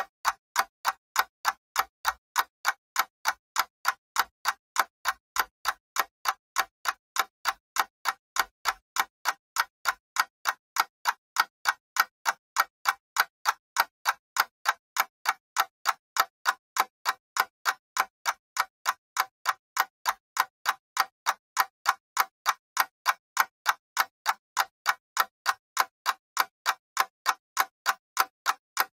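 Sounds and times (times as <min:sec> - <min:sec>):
clock ticking: 0:00.0 - 0:28.9.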